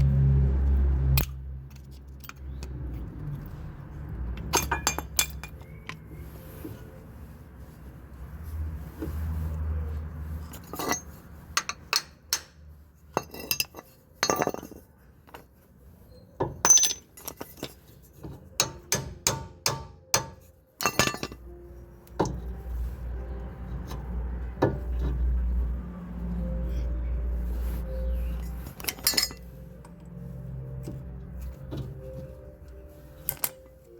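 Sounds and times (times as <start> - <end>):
metal tools clinking: 4.4 - 6.1, 10.4 - 12.5, 13.1 - 19.0, 20.4 - 21.5, 28.1 - 30.1, 33.1 - 33.9.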